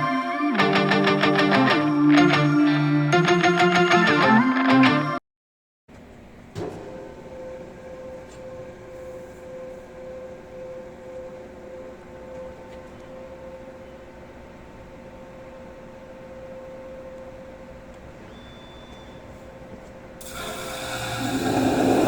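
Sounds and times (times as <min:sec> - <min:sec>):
noisy mechanical bed: 0:05.9 - 0:22.0
lathe whine: 0:20.2 - 0:22.0.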